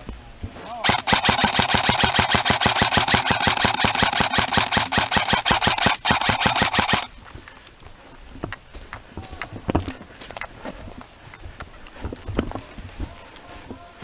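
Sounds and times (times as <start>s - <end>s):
airsoft gun firing full-auto: 0.8s - 7.1s.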